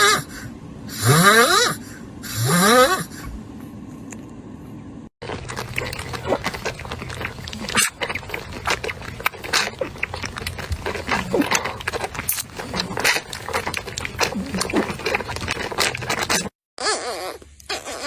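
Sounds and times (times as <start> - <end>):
puppies squeaking and whimpering: 5.5 - 18.0.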